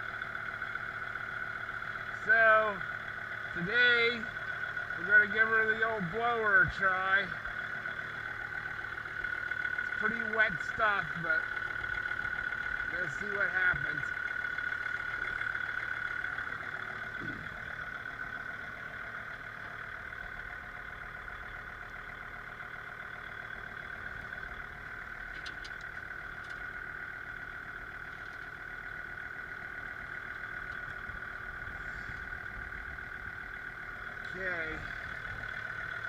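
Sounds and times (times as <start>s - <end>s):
diesel tractor engine running: 0.0s - 36.0s.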